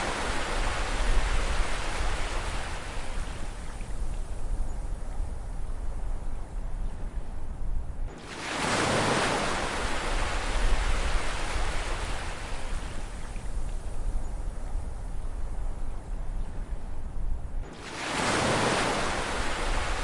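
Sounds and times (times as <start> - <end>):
wave breaking: 17.7 - 20.0.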